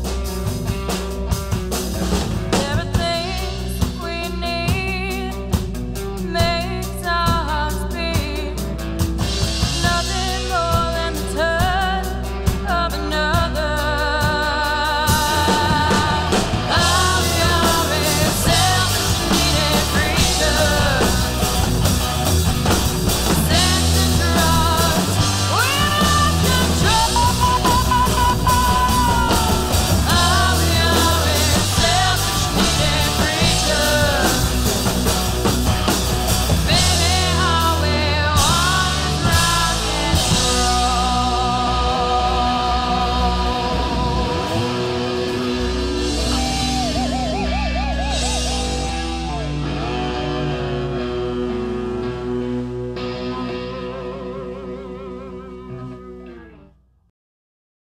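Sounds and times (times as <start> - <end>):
drum kit: 0.0 - 55.1
electric guitars: 0.0 - 56.8
woman singing: 2.5 - 8.7, 9.6 - 21.5, 23.3 - 34.9, 36.6 - 45.4.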